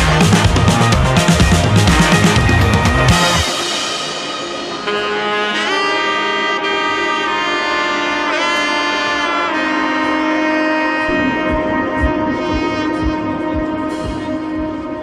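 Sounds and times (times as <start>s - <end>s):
music of long held notes: 0.0s - 15.0s
low beat: 11.0s - 15.0s.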